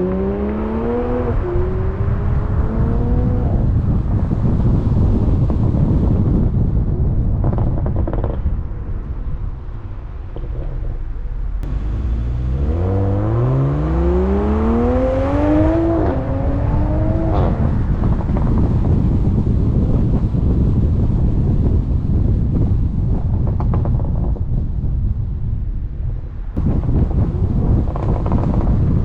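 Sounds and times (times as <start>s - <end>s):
car engine accelerating hard: 0.0s - 3.9s, 11.6s - 18.8s
wind buffeting microphone: 0.0s - 29.0s.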